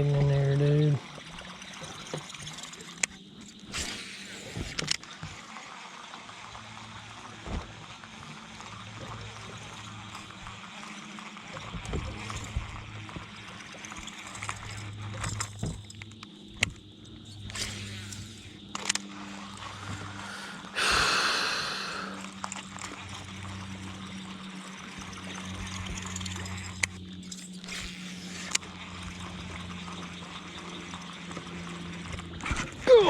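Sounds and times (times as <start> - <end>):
steady low hum: 11.6 - 33.0.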